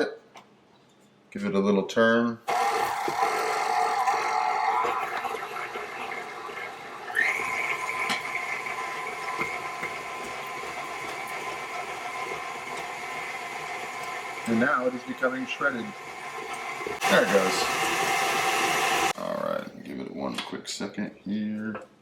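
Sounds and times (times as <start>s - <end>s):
stand mixer motor whine: 2.5s - 19.2s.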